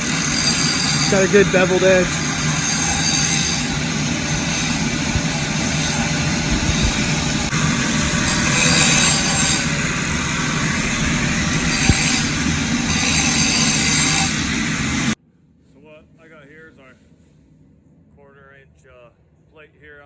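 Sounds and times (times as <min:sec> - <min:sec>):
angle grinder grinding steel: 0:00.1 - 0:15.2.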